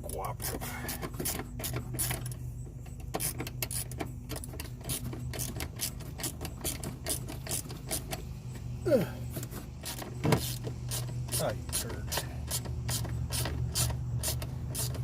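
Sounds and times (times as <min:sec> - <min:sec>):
ratchet wrench clicking: 0:03.1 - 0:08.3, 0:09.8 - 0:15.0.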